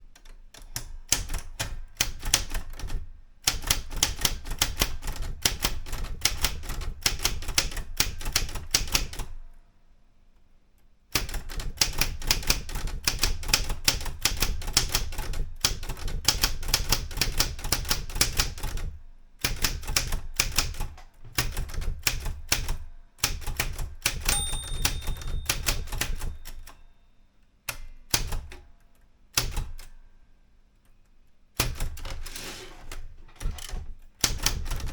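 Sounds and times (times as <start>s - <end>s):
manual typewriter typing: 0.2s - 9.3s, 11.2s - 26.8s, 29.3s - 29.9s, 31.6s - 34.9s
typewriter margin bell ringing: 24.3s - 26.8s.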